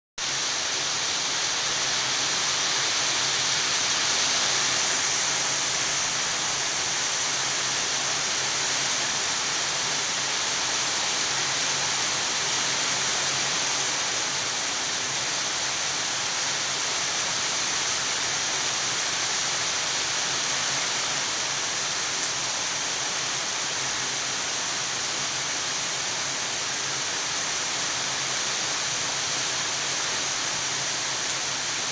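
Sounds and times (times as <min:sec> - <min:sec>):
steady rain falling: 0:00.2 - 0:31.9.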